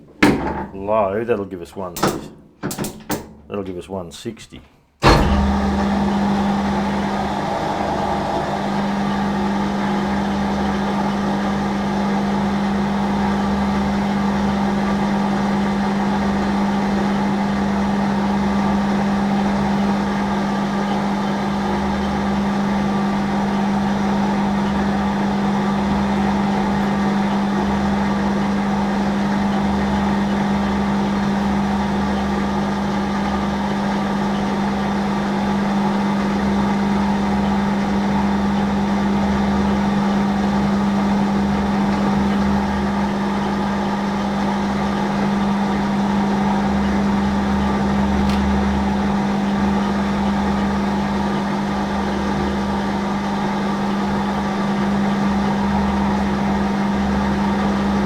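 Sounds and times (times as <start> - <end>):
metal lathe humming: 5.0 - 13.4.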